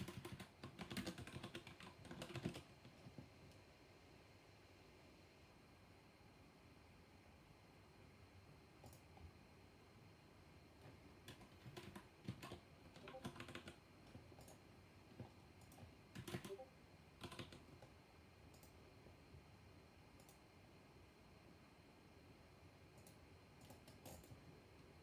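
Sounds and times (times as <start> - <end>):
mechanical keyboard typing: 0.0 - 3.2, 11.2 - 14.6, 15.6 - 17.9, 23.0 - 24.4.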